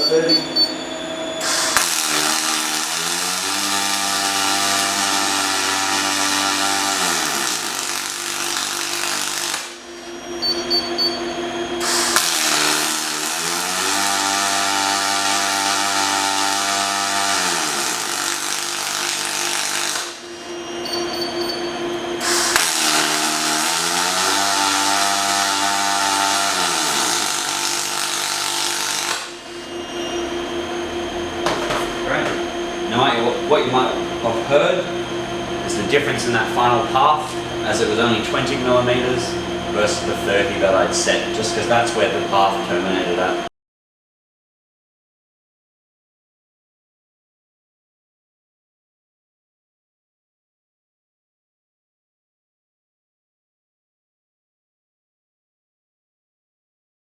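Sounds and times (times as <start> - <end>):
short high beeps: 0.0 - 1.1, 10.1 - 11.4, 20.4 - 21.9
machine whine: 0.0 - 43.5
motor hum: 0.0 - 43.5
welding arc hissing and crackling: 1.4 - 10.3, 11.8 - 20.6, 22.2 - 29.8.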